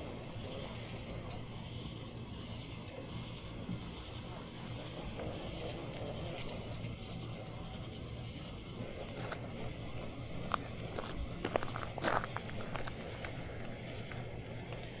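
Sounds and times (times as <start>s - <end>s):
faint clicks: 0.0s - 1.7s, 4.6s - 7.7s, 8.8s - 15.0s
faint low hum: 0.0s - 15.0s
insects chirring: 0.0s - 15.0s.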